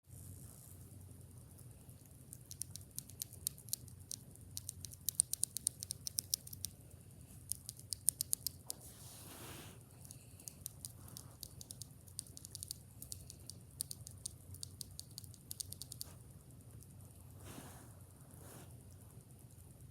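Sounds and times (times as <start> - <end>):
mechanical keyboard typing: 2.4 - 6.7, 7.4 - 8.7, 10.0 - 16.1.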